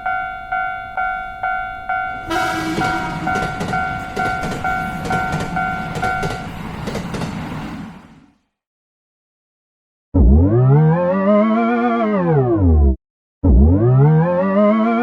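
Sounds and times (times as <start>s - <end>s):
railroad crossing bell ringing: 0.0s - 6.7s
train passing: 0.0s - 8.6s.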